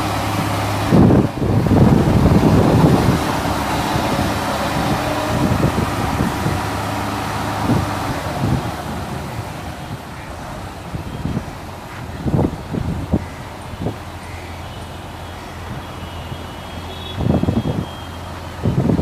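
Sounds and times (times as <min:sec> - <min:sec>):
road roller engine running: 0:00.0 - 0:19.0.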